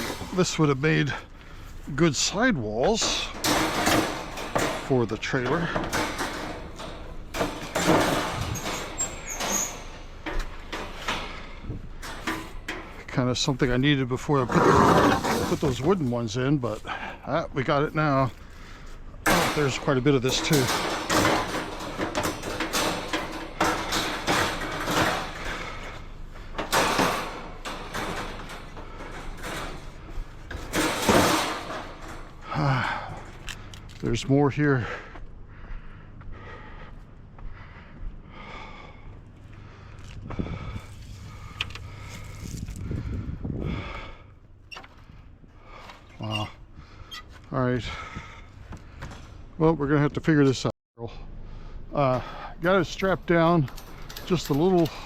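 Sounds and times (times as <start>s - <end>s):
metal shelving knocks and clanks: 0.0s - 1.3s, 1.9s - 17.0s, 19.2s - 33.5s, 52.9s - 55.0s
shelving scraping: 0.0s - 34.5s.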